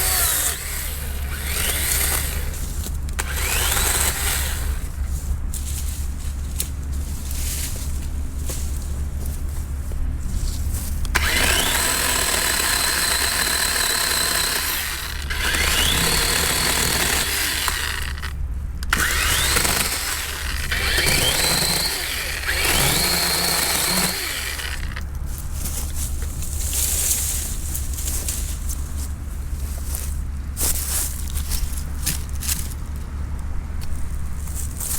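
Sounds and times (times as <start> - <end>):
electric chainsaw cutting wood: 0.0 - 5.0, 11.1 - 25.0.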